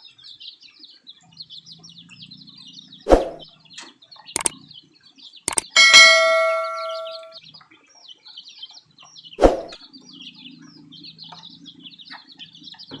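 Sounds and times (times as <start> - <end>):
ringing tone: 5.5 - 7.4
ducklings and chicks peeping: 10.0 - 13.0.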